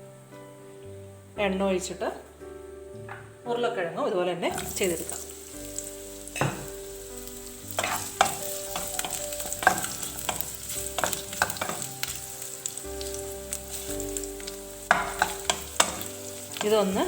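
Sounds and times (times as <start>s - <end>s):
potatoes sizzling in oil: 3.5s - 17.0s
taps and clatters against pan: 7.8s - 12.2s, 14.9s - 16.7s.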